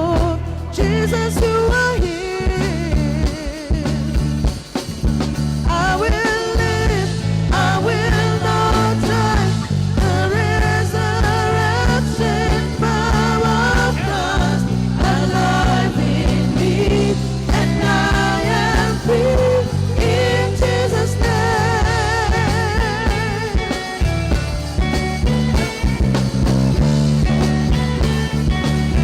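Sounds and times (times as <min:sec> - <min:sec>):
people singing: 0:00.0 - 0:04.2, 0:05.7 - 0:24.1
live band playing worship music: 0:00.0 - 0:29.0
steady drum beat: 0:00.0 - 0:29.0.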